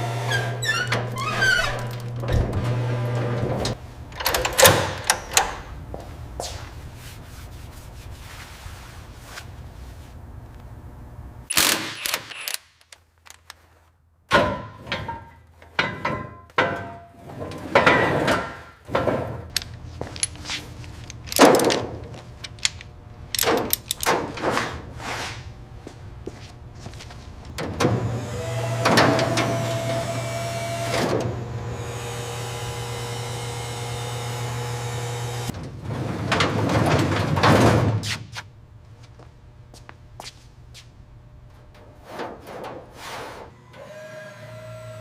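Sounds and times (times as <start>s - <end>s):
metal knocks and clanks: 14.3s - 24.8s.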